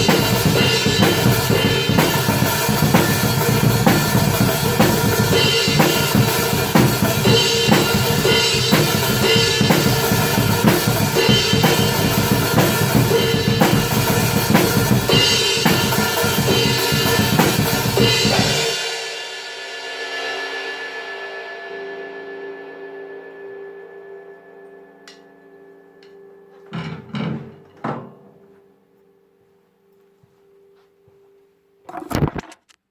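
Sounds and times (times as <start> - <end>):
fast driving drums: 0.0 - 19.5
black metal music: 0.0 - 29.0.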